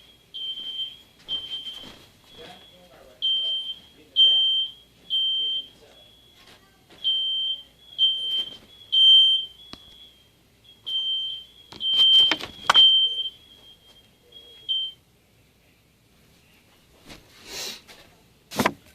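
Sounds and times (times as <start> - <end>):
smoke alarm beeping: 0.0 - 15.0.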